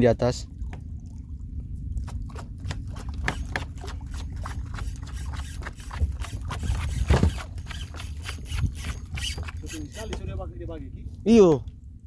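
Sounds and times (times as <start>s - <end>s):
wind rumbling on microphone: 0.0s - 12.0s
sharp clicks and knocks: 2.3s - 10.3s.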